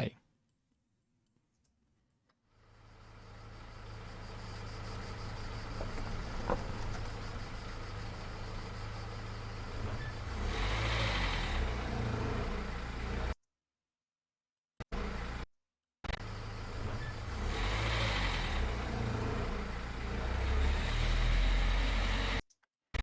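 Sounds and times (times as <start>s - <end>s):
car engine idling: 2.6s - 13.3s, 16.2s - 22.4s.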